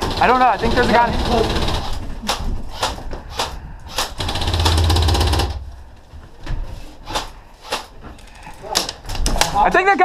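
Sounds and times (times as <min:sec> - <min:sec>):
airsoft gun full-auto burst: 0:02.7 - 0:05.7.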